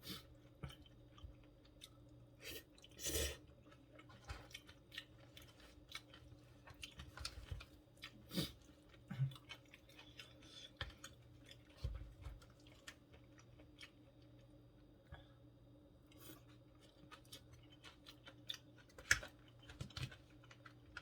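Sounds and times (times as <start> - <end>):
close chewing with wet smacks: 0.3 - 14.6, 16.1 - 21.0.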